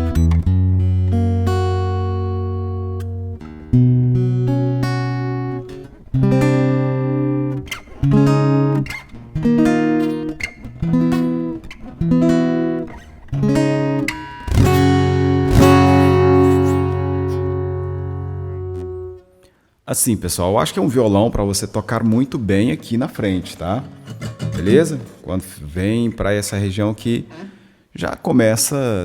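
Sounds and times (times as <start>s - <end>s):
acoustic guitar chords ringing: 0.0s - 19.4s, 22.7s - 25.2s.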